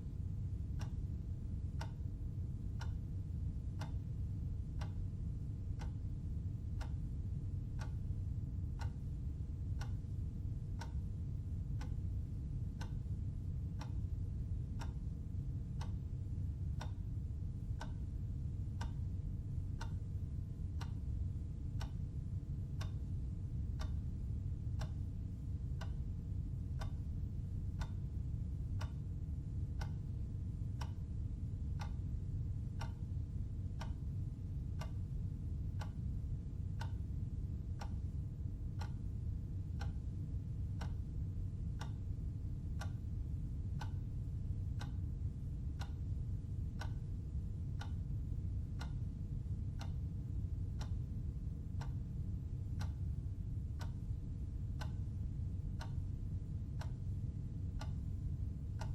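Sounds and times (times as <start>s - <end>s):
steady low hum: 0.0s - 58.9s
clock ticking: 1.8s - 3.0s, 4.8s - 5.0s, 5.6s - 6.1s, 6.8s - 7.0s, 7.7s - 8.2s, 8.8s - 9.1s, 9.8s - 10.2s, 10.8s - 11.1s, 11.7s - 16.0s, 16.8s - 26.1s, 26.8s - 27.1s, 27.7s - 29.0s, 29.7s - 31.0s, 31.8s - 33.1s, 33.8s - 37.0s, 37.8s - 39.1s, 39.7s - 41.0s, 41.8s - 49.2s, 49.8s - 51.1s, 52.7s - 53.0s, 53.8s - 54.2s, 54.8s - 55.0s, 55.8s - 56.0s, 56.8s - 57.0s, 57.8s - 58.9s.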